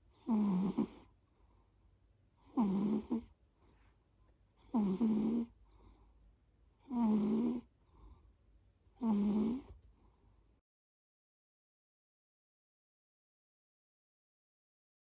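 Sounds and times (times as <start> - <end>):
pet snoring: 0.1 - 1.1, 2.4 - 3.3, 4.6 - 5.6, 6.8 - 7.7, 9.0 - 9.8
faint breaths: 3.4 - 7.0, 7.6 - 8.6.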